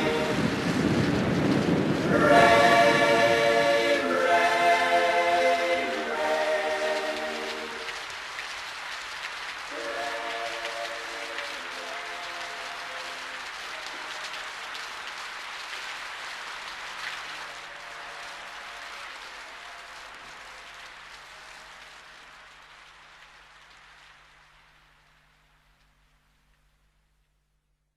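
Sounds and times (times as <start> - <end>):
held music chord: 0.0 - 0.5, 2.1 - 7.9
rain hissing: 0.0 - 27.2.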